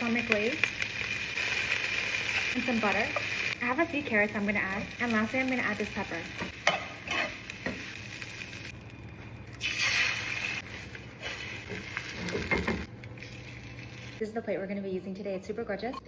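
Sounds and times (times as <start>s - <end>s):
vegetables sizzling in a pan: 0.0s - 8.8s, 9.6s - 12.9s.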